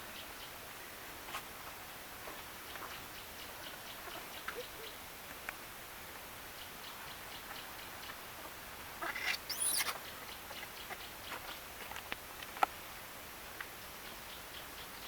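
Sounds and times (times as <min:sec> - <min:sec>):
monkeys squeaking: 0:09.0 - 0:10.0
thin chirping: 0:09.0 - 0:10.0.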